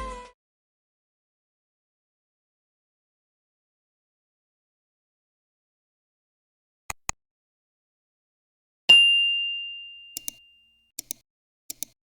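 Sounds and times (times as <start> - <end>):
bell-like ding: 8.9 - 10.9.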